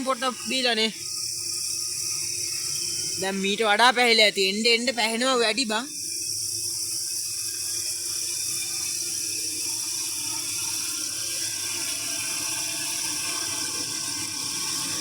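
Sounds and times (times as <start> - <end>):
night insects chorus: 0.0 - 15.0.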